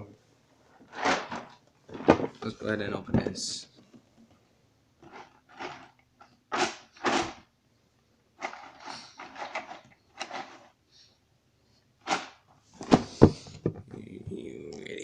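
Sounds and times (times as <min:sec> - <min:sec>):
packaging scraping and rustling: 0:00.8 - 0:02.6, 0:05.0 - 0:07.4, 0:08.4 - 0:10.8.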